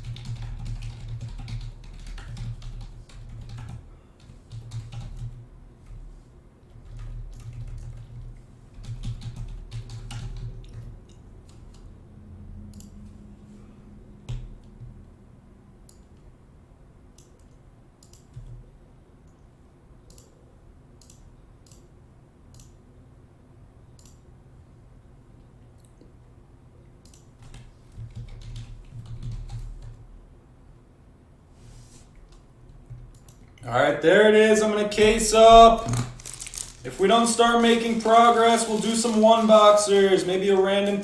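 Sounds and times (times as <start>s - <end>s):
typing on computer keyboard: 0.0s - 6.1s, 6.7s - 11.9s, 17.2s - 18.7s, 20.1s - 20.4s, 27.0s - 30.1s, 32.8s - 33.6s, 35.0s - 40.0s
keyboard clicks: 17.2s - 18.6s, 20.1s - 20.4s, 21.0s - 21.9s, 22.5s - 22.8s, 27.0s - 30.0s, 32.3s - 33.6s.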